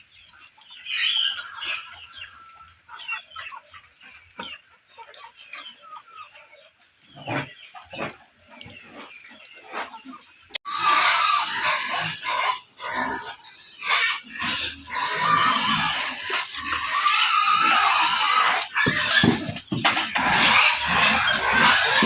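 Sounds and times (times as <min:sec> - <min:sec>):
pigs grunting and squealing: 0:00.8 - 0:22.0.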